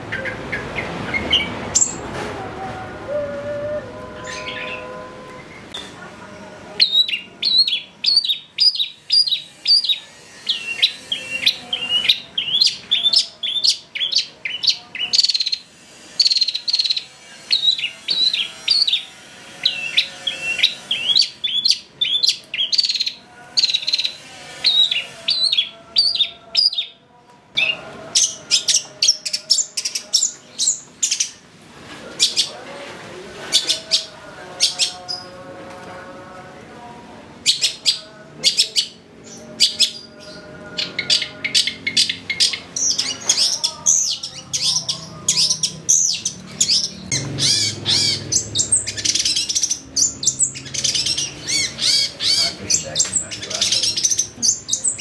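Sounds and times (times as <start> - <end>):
lower steadier bird notes: 0.1 - 24.2.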